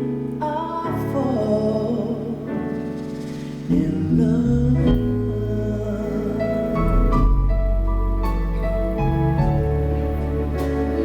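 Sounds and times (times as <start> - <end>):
man singing ballad: 0.3 - 2.8, 3.6 - 7.4
band playing chords: 4.9 - 11.0.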